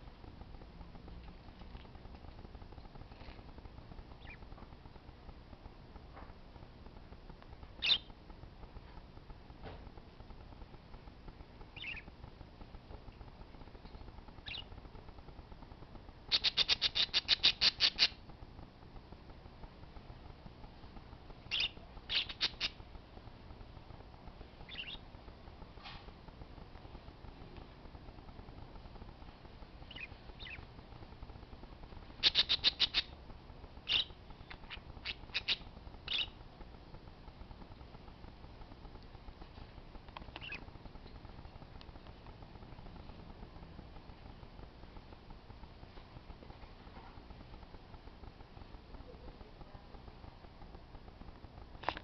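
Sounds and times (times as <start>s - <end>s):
parakeet squawks: 4.2s - 4.4s, 7.8s - 8.1s, 11.8s - 12.1s, 14.4s - 14.7s, 16.3s - 18.2s, 21.5s - 22.8s, 24.7s - 25.0s, 29.9s - 30.6s, 32.2s - 33.1s, 33.8s - 36.4s, 40.4s - 40.7s.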